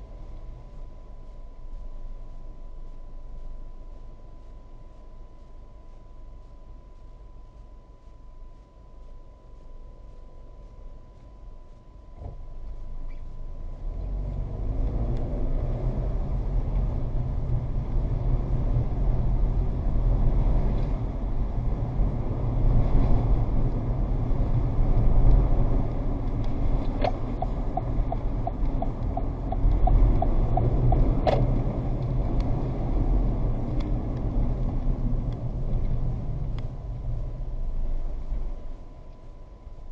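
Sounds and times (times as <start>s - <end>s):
car road and engine rumble: 0.0s - 39.9s
light ticks: 0.1s - 15.7s, 25.2s - 37.1s, 38.3s - 39.9s.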